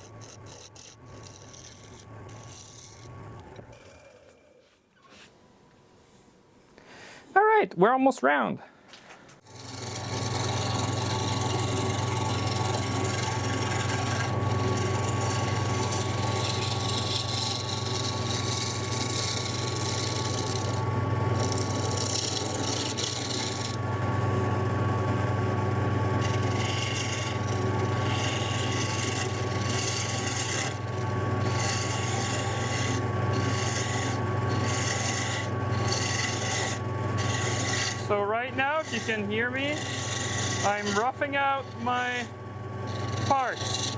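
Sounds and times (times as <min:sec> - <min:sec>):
wood lathe motor hum: 0:00.0 - 0:05.2, 0:09.5 - 0:43.9
turning tool scraping wood: 0:00.0 - 0:05.4, 0:09.4 - 0:43.9.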